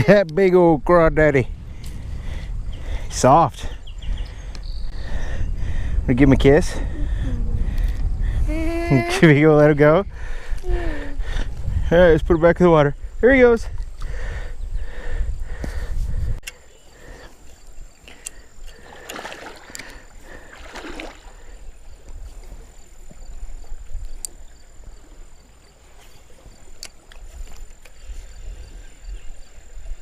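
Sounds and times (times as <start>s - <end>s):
river water sloshing and splashing: 17.2s - 30.0s.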